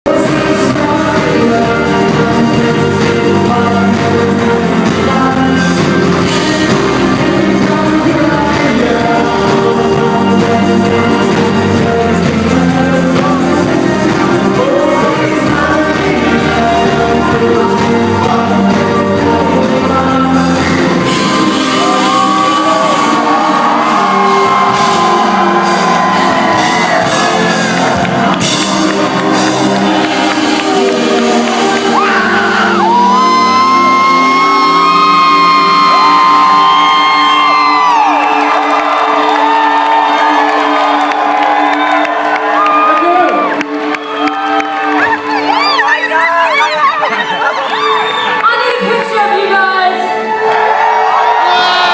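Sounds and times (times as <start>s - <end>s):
person singing: 0.0s - 50.4s
drums: 0.0s - 51.9s
live electronic rock band: 0.1s - 50.4s
guitar: 0.1s - 51.9s.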